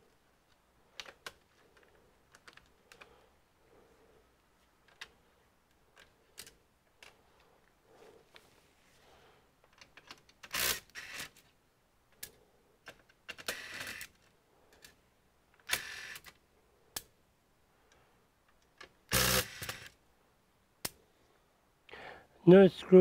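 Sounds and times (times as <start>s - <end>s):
small parts clicking and rattling: 0.4s - 3.1s, 4.8s - 7.5s, 9.6s - 16.4s, 17.8s - 20.0s.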